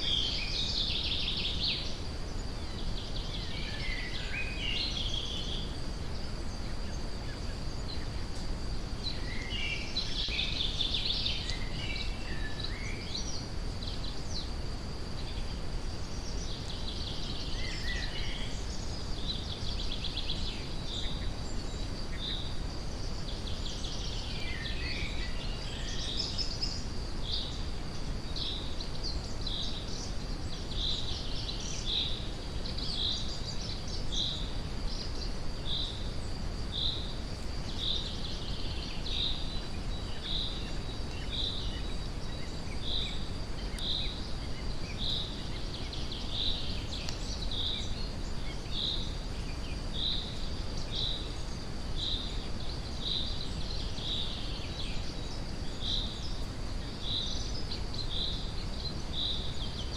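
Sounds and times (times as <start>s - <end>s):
brown-noise rumble: 0.0s - 59.9s
faint high-pitched whine: 0.0s - 59.9s.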